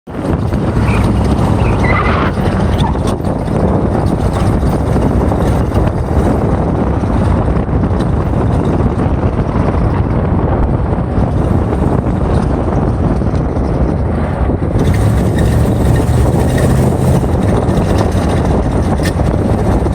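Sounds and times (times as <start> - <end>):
road and drivetrain noise: 0.0 - 19.9.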